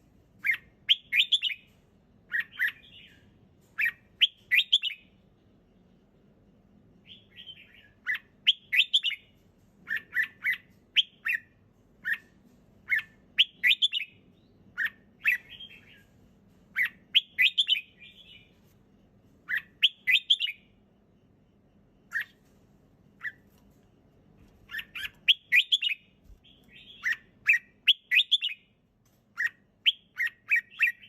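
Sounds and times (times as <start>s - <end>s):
bird singing short phrases: 24.7s - 28.7s.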